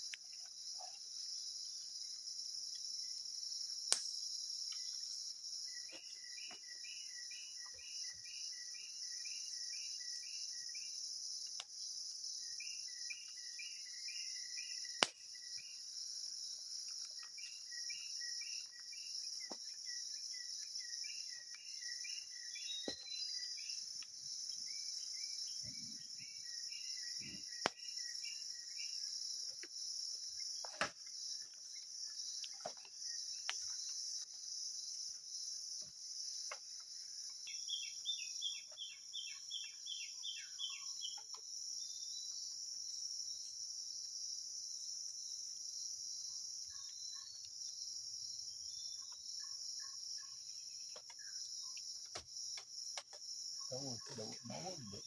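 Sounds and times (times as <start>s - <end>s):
crickets trilling: 0.0s - 55.0s.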